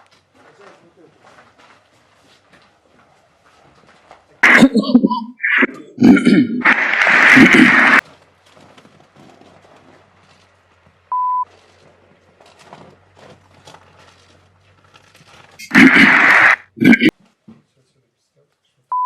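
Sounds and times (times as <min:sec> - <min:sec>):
person coughing: 0:04.4 - 0:08.0, 0:15.6 - 0:17.1.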